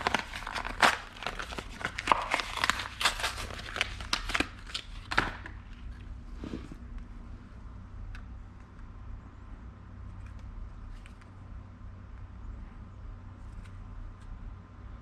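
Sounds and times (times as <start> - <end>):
packaging crinkling and rustling: 0.0 - 6.0
steady low hum: 0.0 - 15.0.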